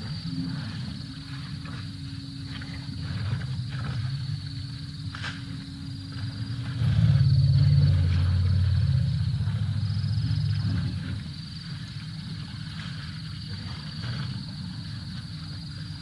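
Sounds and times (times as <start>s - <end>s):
crickets chirping: 0.0s - 16.0s
elephant rumbling: 6.5s - 11.2s.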